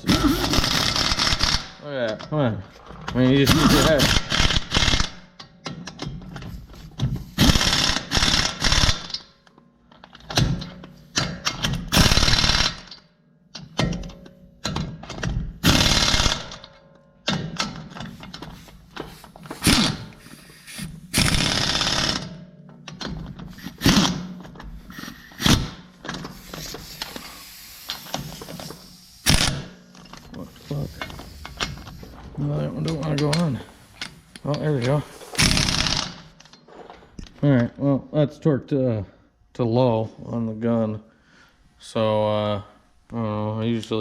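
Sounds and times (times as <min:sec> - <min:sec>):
impact wrench hammering: 0:10.3 - 0:13.0, 0:13.6 - 0:27.1, 0:27.9 - 0:29.9, 0:35.3 - 0:36.4.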